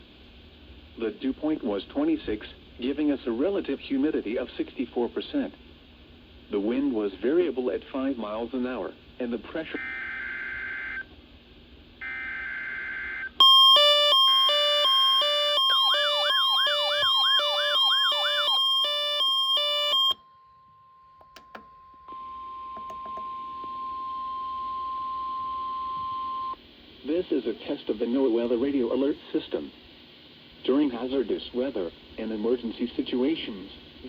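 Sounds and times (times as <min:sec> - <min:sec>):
rapid alarm beeps with chirps: 0:12.0 - 0:20.3
steady high warning alarm tone: 0:12.0 - 0:26.5.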